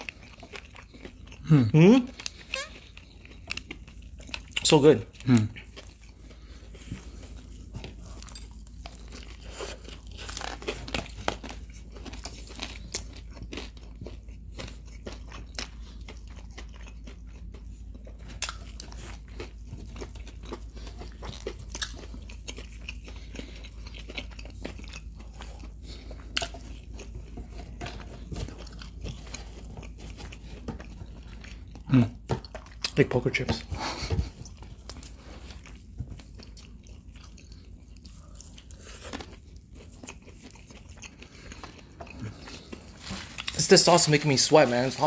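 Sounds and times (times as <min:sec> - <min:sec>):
low steady hum: 0:00.0 - 0:45.0
people chewing crisp food: 0:00.0 - 0:45.0.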